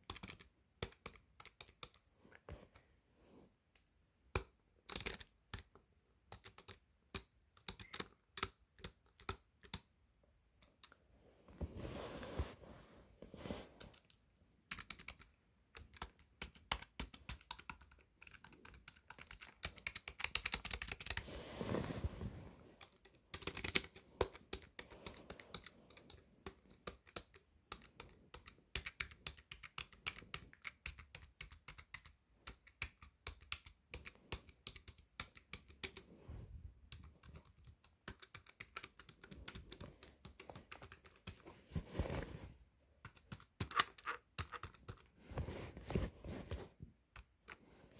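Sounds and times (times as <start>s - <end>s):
typing on computer keyboard: 6.3s - 9.8s, 14.7s - 21.2s, 23.3s - 26.2s, 26.8s - 36.0s, 37.0s - 41.4s.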